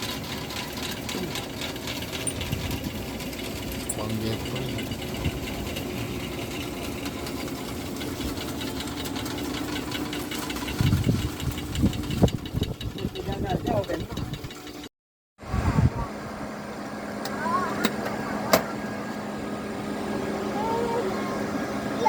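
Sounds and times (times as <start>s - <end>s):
small engine knocking: 0.0s - 14.9s.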